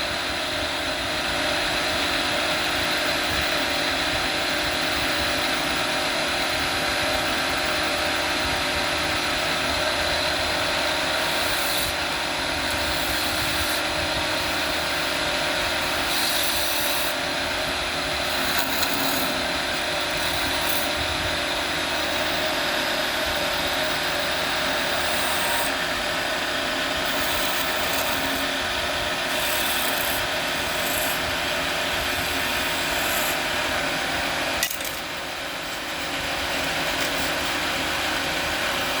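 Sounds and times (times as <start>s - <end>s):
lathe motor hum: 0.0s - 39.0s
chisel scraping wood: 16.0s - 17.2s, 18.3s - 20.9s, 27.1s - 28.6s, 29.2s - 31.3s, 32.0s - 35.1s, 35.7s - 37.6s.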